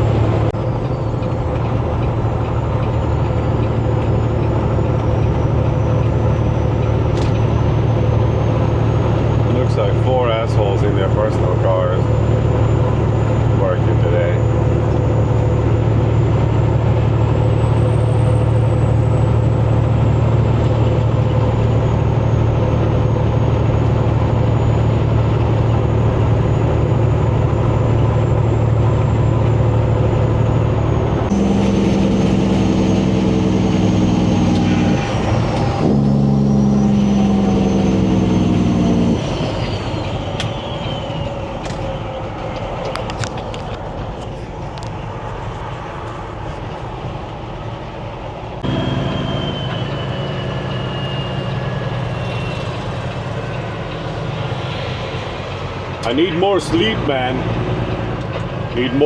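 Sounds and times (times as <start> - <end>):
truck engine running: 0.0 - 59.0
loud chord-like horn drone: 31.3 - 37.7.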